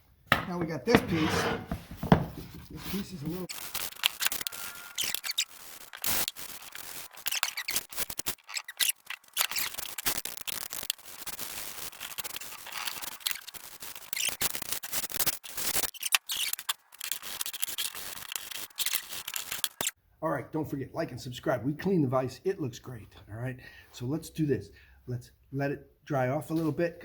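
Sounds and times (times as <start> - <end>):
wire brush scrubbing metal: 2.9 - 19.9.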